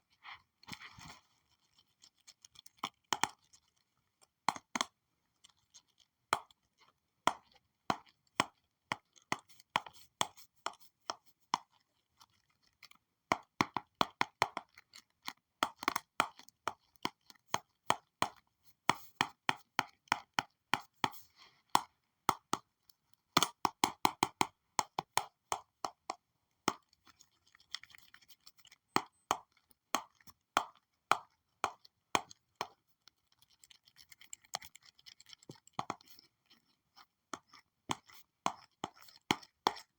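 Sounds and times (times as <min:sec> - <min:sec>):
stylus tapping on drawing tablet: 0:35.8 - 0:36.1.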